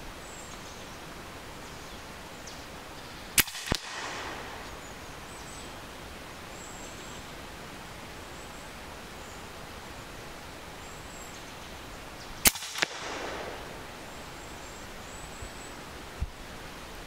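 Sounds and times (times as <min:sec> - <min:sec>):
air rifle shot crack: 0:03.4 - 0:05.6, 0:12.4 - 0:14.8.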